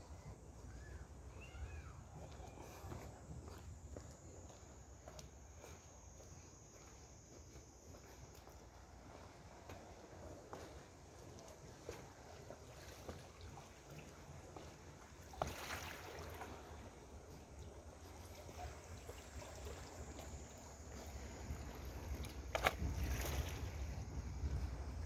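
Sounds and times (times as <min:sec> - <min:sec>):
faint wash of water: 0:00.0 - 0:25.0
wind rumbling on microphone: 0:18.6 - 0:25.0.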